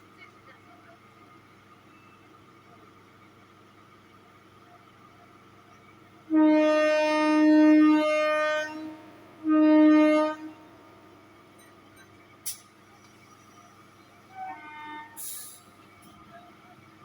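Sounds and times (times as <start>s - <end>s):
train horn blasts: 6.3s - 11.0s, 14.3s - 15.6s.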